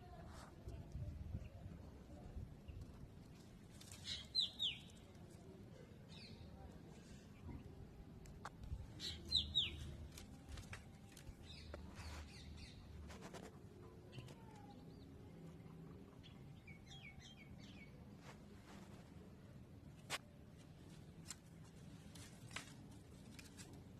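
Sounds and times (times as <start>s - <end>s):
bird chirping: 4.0s - 5.0s, 9.0s - 10.0s, 16.0s - 18.0s.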